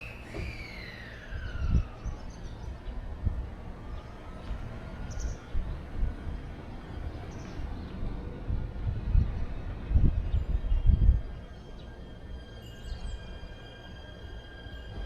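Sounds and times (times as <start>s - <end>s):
high bird chirp: 0.0s - 3.0s.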